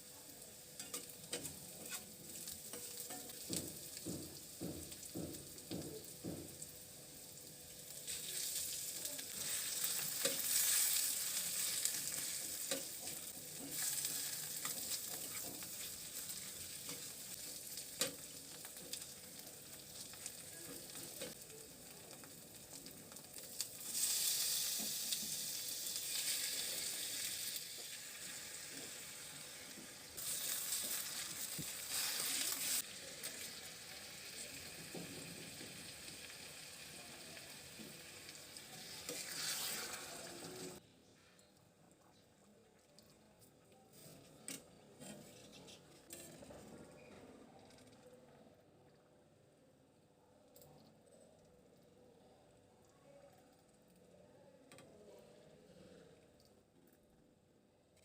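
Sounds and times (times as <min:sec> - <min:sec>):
food sizzling in oil: 0:00.0 - 0:40.8
utensil scraping a pan: 0:00.8 - 0:03.7, 0:30.2 - 0:32.8, 0:38.8 - 0:40.8.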